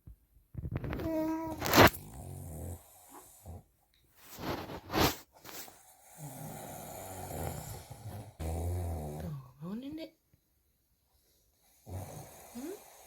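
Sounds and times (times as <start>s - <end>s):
man snoring: 1.8s - 3.6s, 6.0s - 9.4s, 11.7s - 13.0s.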